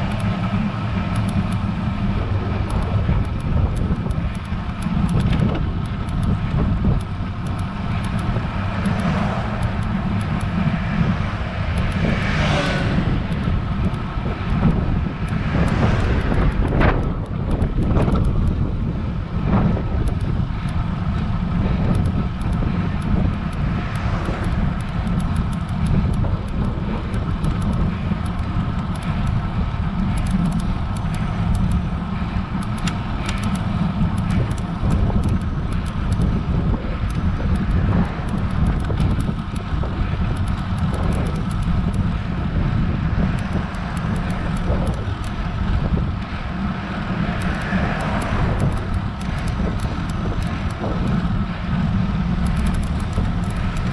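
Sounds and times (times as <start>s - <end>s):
low wind rumble on microphone: 0.0s - 53.9s
faint light ticks: 20.0s - 29.4s.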